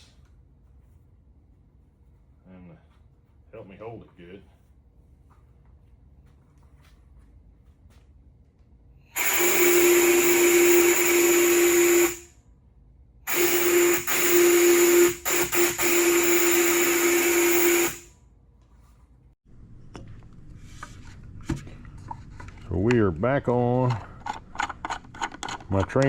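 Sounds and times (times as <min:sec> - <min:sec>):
loud air hiss: 0:09.2 - 0:12.2
steam whistle blasts: 0:09.2 - 0:12.3, 0:13.3 - 0:18.1.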